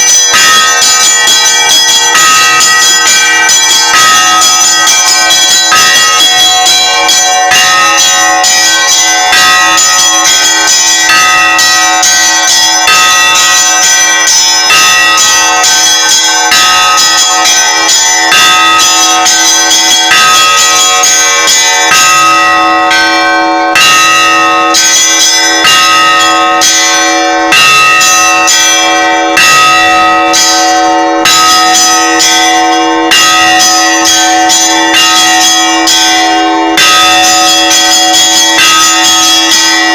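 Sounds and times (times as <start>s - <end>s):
heavy bell strokes: 0.0s - 39.9s
mid-sized bell humming: 0.0s - 39.9s
small bells struck rapidly: 0.0s - 39.9s.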